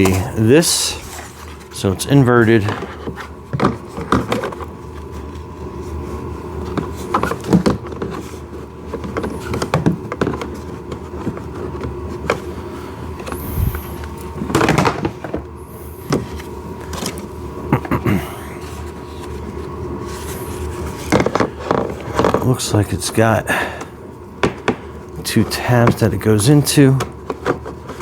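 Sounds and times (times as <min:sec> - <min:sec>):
faint steady hum: 0:00.0 - 0:28.0
plastic parts knocking and rubbing: 0:02.4 - 0:05.3, 0:06.6 - 0:12.4, 0:20.1 - 0:22.6, 0:27.0 - 0:28.0.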